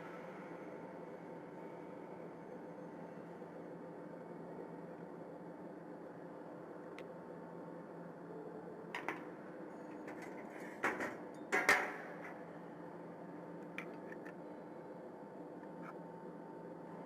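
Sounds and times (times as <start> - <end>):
faint hum: 0.0 - 17.0.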